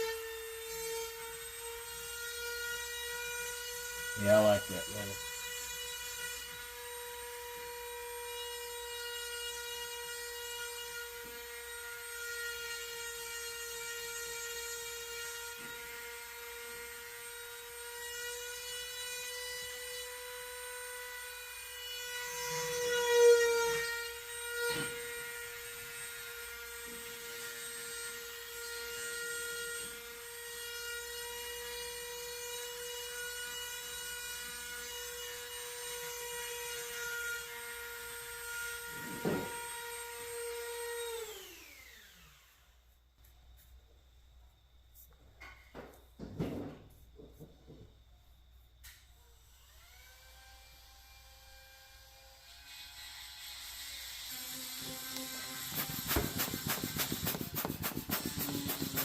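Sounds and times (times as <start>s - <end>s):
electric power tool whining: 53.8s - 59.0s.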